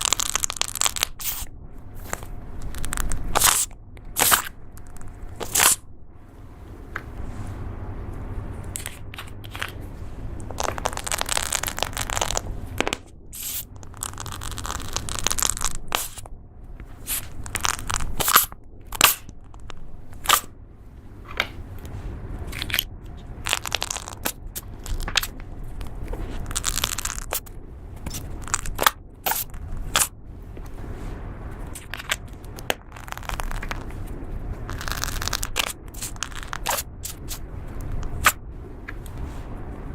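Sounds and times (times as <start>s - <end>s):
slime crackling and popping: 0.0s - 5.8s, 10.4s - 20.5s, 22.5s - 30.2s, 31.7s - 38.4s.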